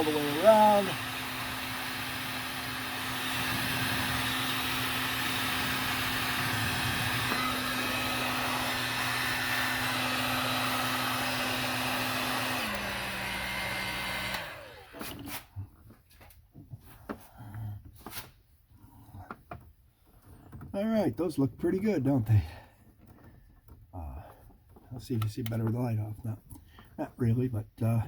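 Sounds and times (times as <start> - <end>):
heat gun blowing: 0.0 - 15.5.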